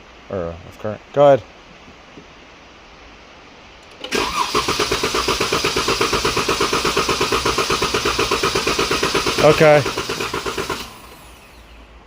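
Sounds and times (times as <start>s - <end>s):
engine cranking without firing: 3.8s - 11.7s.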